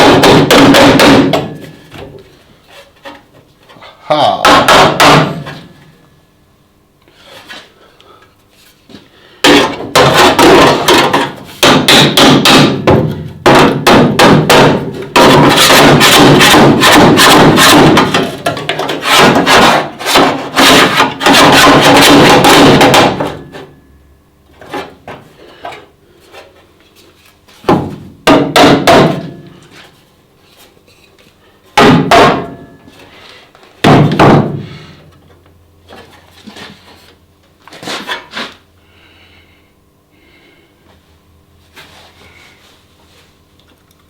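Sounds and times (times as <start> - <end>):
hammer striking sheet steel: 0.0 - 1.8, 4.4 - 5.6, 9.4 - 23.7, 27.7 - 29.6, 31.8 - 32.8.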